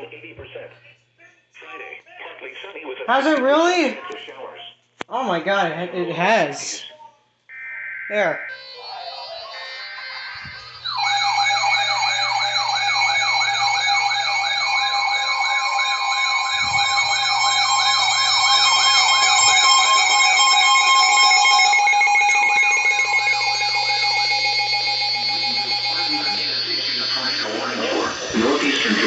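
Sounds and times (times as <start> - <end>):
warbling siren tone: 7.5 - 29.0
steady alert tones: 8.1 - 29.0.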